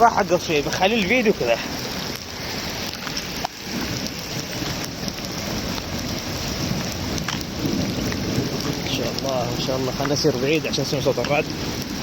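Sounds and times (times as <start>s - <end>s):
heavy rain pouring: 0.0s - 12.0s
faint drip clicks: 9.9s - 11.9s.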